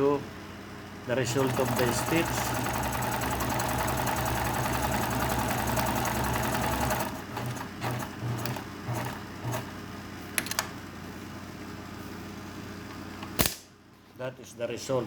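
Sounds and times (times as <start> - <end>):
sewing machine running fast: 1.2 - 9.7.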